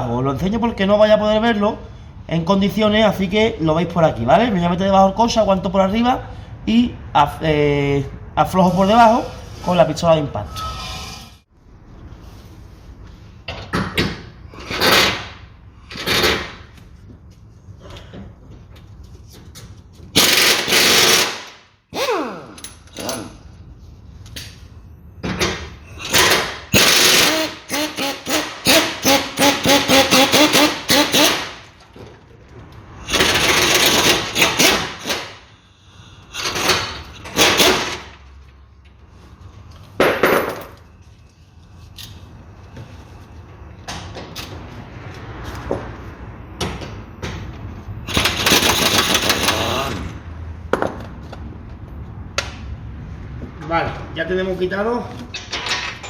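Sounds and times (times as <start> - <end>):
impact wrench hammering: 20.1 - 23.3, 25.3 - 31.7, 33.1 - 35.5, 36.4 - 38.2, 48.0 - 50.1.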